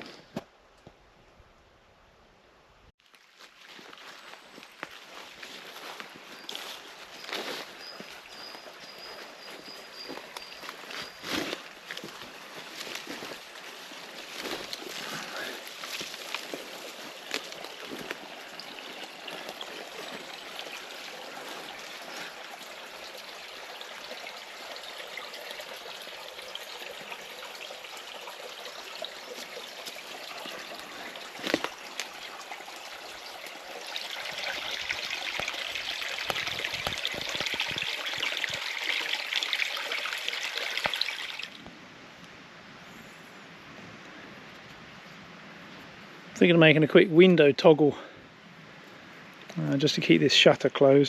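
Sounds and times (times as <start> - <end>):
stream trickling over stones: 3.0 - 41.7, 49.2 - 51.0.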